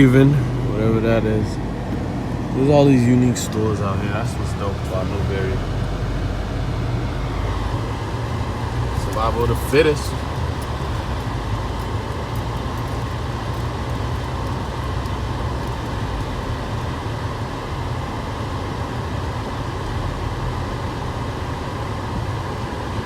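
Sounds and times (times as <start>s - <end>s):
low vehicle rumble: 0.0s - 23.0s.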